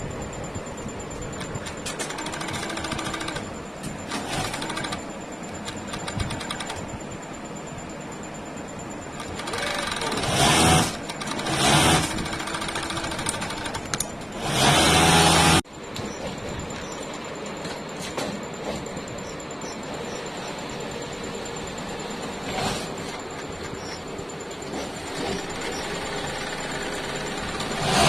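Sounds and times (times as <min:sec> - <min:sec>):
sewing machine stitching: 0:01.8 - 0:03.5, 0:04.1 - 0:05.0, 0:09.2 - 0:15.6, 0:24.7 - 0:28.0.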